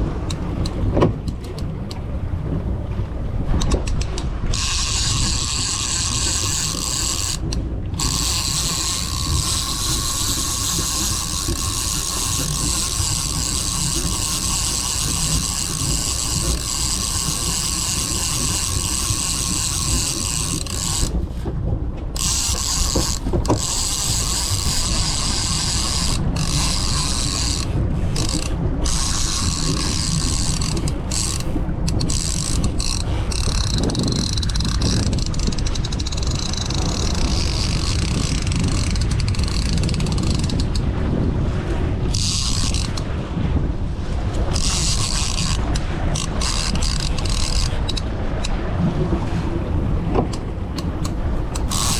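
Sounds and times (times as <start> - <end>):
fishing reel gear whir: 3.5 - 21.5, 22.1 - 40.8, 42.1 - 43.1, 44.3 - 48.5, 50.3 - 51.9.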